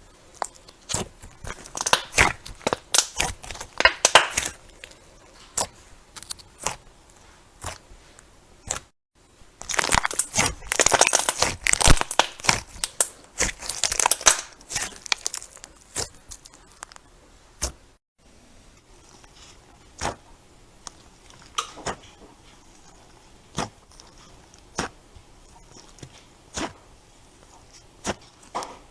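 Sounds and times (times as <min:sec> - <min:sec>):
slime crackling and popping: 0:00.1 - 0:07.8, 0:09.5 - 0:17.8.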